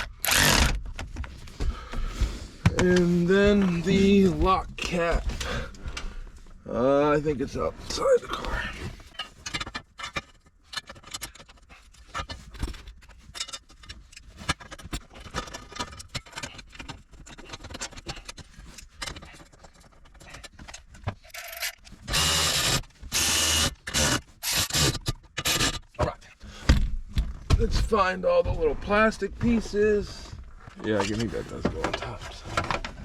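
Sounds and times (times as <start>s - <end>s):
loud scraping and rustling: 0.1s - 6.5s, 27.7s - 33.0s.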